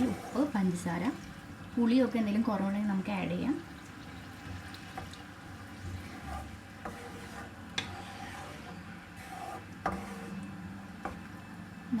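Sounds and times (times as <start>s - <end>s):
spoon stirring sauce in pan: 3.8s - 11.4s.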